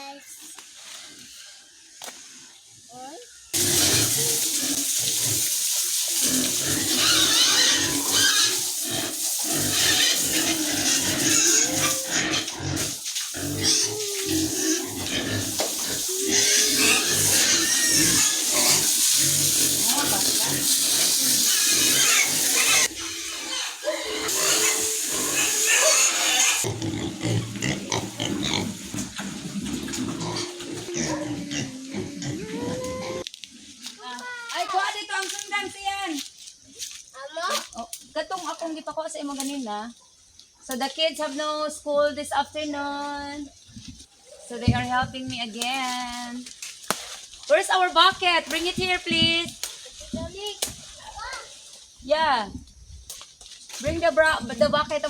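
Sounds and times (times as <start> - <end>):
pig squeals: 3.6 - 5.5, 6.2 - 33.2
loud hiss: 3.6 - 29.2
pigs grunting: 6.2 - 33.2.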